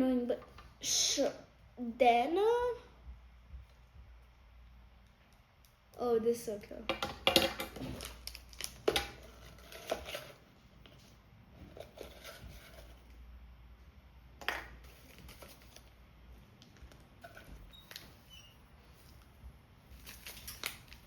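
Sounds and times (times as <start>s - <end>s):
packaging rustling: 7.8s - 10.4s, 20.0s - 21.0s.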